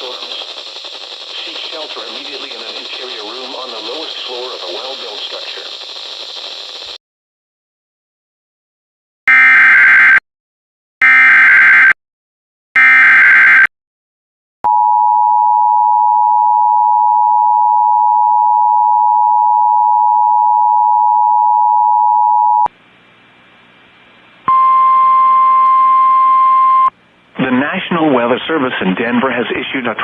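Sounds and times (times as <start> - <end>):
buzzy digital data screech: 0.0 - 7.0
faint hiss: 0.0 - 7.0.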